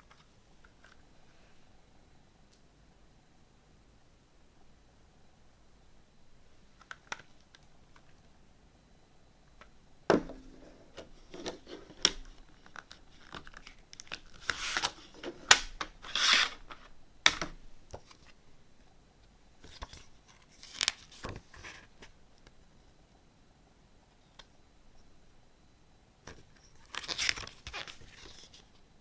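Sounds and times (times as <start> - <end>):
plastic wrapping tearing: 12.6 - 16.8, 26.8 - 28.0.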